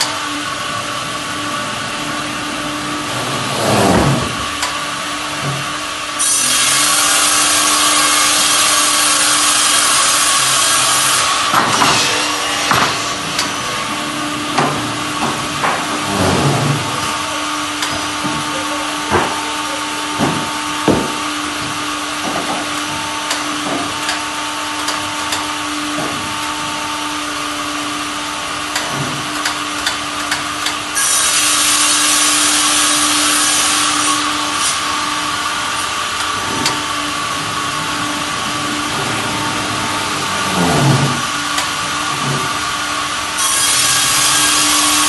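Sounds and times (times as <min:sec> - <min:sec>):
sawmill mechanical hum: 0:00.0 - 0:45.0
sharp knocks: 0:11.5 - 0:13.6, 0:14.5 - 0:16.9, 0:20.2 - 0:22.7.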